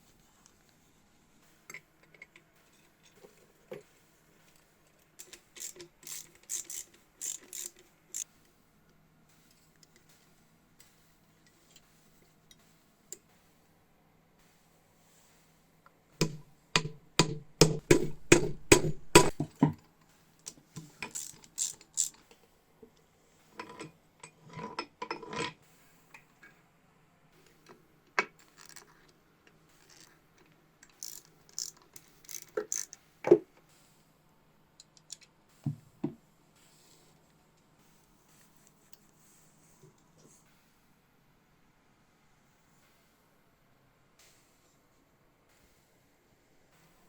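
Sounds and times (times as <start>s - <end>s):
metal clinks and scrapes: 5.2s - 8.2s
tools knocking: 16.2s - 19.8s.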